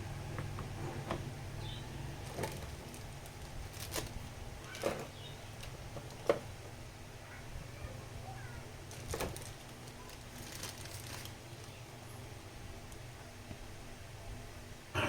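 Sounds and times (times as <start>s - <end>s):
steady low hum: 13.7s - 15.0s.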